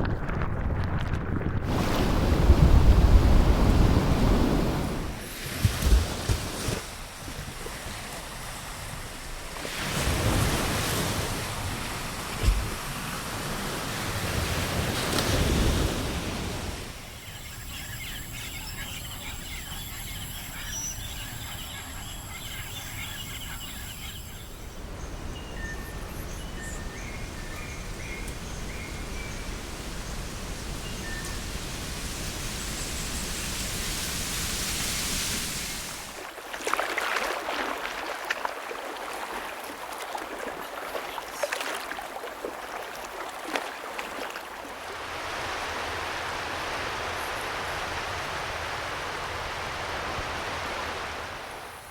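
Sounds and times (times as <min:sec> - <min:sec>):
ocean waves breaking: 0:01.6 - 0:25.3, 0:27.9 - 0:51.9
soft surf: 0:01.6 - 0:51.9
birds chirping: 0:17.0 - 0:31.4.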